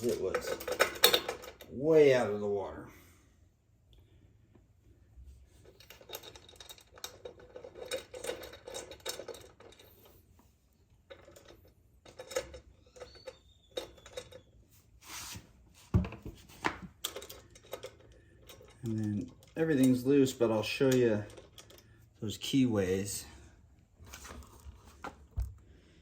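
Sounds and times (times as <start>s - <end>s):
metal hardware clinking: 0.0s - 1.8s.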